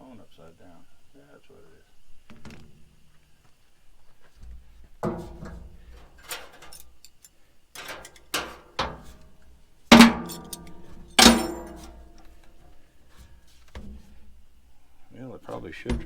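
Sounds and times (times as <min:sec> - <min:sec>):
metal clanking: 0:04.4 - 0:16.0.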